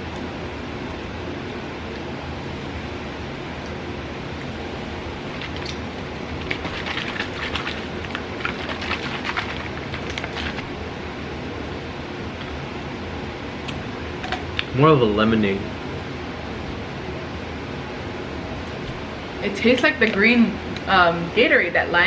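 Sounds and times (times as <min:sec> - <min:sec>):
plastic packaging crinkling: 0:05.3 - 0:10.7.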